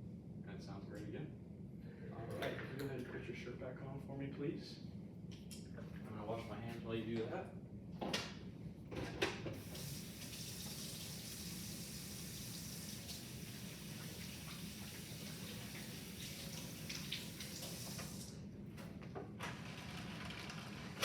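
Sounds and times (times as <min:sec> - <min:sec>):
sink tap running: 0:09.6 - 0:18.3.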